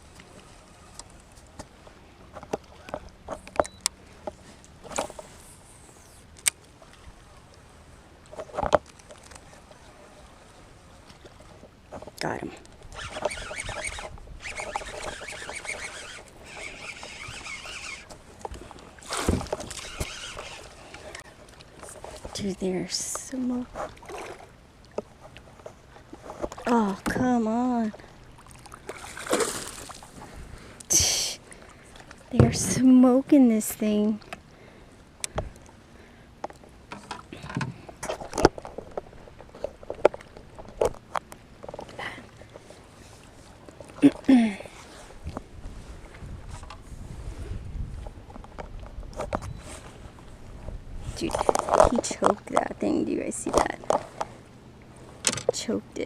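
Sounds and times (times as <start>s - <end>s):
water splashing: 6.2s - 25.5s, 26.1s - 30.7s
fishing reel cranking: 12.9s - 18.2s, 19.5s - 21.3s.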